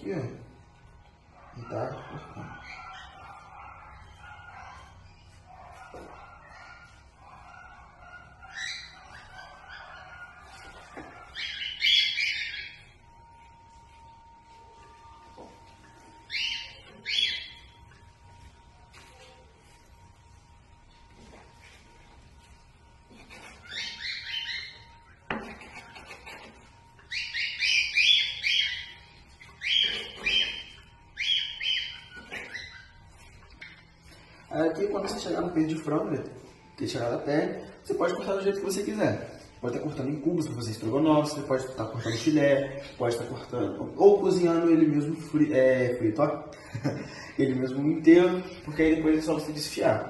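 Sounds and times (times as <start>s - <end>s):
harsh bird squawk: 7.7s - 13.0s, 16.3s - 17.7s, 23.2s - 33.9s
animal crying high-pitched notes: 11.3s - 13.2s, 15.9s - 17.9s, 23.1s - 34.4s
bird calling: 16.1s - 17.8s, 23.1s - 34.3s.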